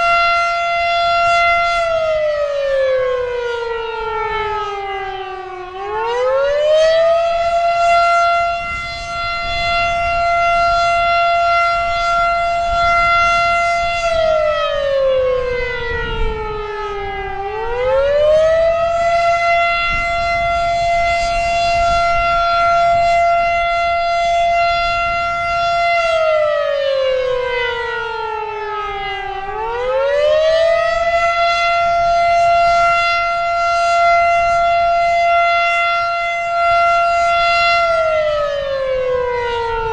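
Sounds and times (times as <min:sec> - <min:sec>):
outdoor warning siren: 0:00.0 - 0:39.9.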